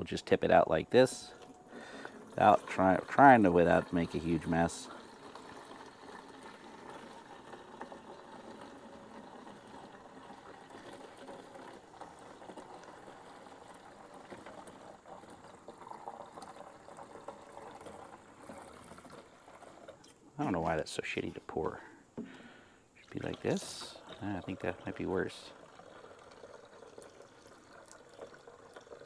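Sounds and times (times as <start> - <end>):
liquid pouring from metal tank: 0.3 - 21.8, 23.0 - 29.0.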